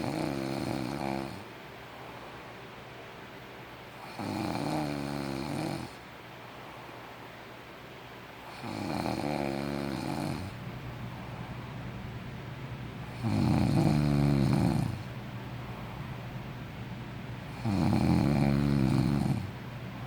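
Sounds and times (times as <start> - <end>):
person snoring: 0.0 - 1.4, 4.0 - 6.0, 8.5 - 10.6, 13.1 - 15.1, 17.5 - 19.6.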